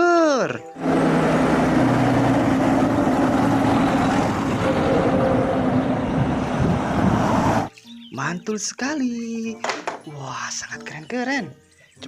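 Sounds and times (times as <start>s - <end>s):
bus engine running: 0.8s - 7.7s.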